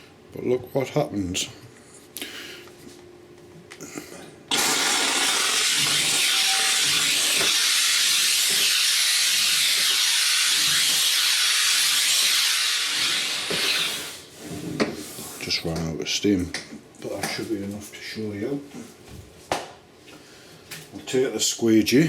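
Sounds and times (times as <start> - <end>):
steam cleaner hissing: 4.5 - 14.3.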